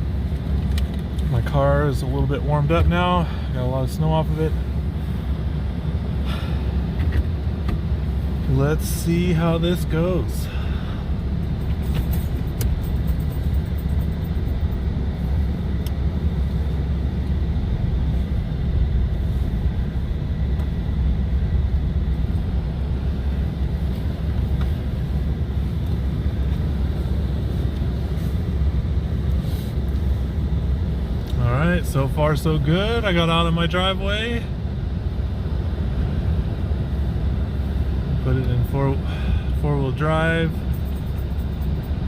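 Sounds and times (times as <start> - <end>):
pickup engine and tyres rumbling: 0.0 - 42.0.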